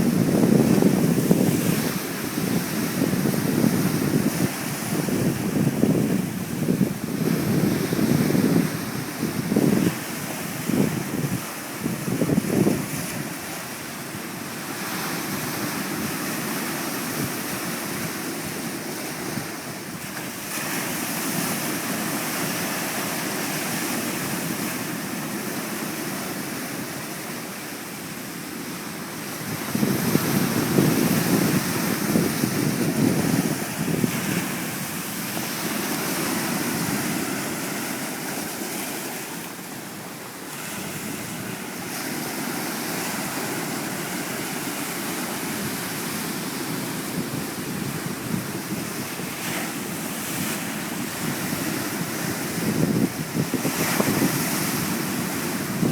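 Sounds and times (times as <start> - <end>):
wind buffeting microphone: 0.0 - 13.6, 29.2 - 38.5, 40.6 - 55.9
sea waves washing on shore: 0.0 - 55.9.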